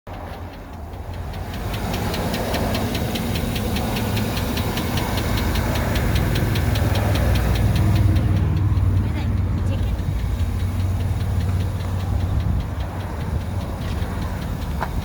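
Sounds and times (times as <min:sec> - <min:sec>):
rapid regular engine ticking: 0:00.0 - 0:15.0
engine idling: 0:00.1 - 0:15.0.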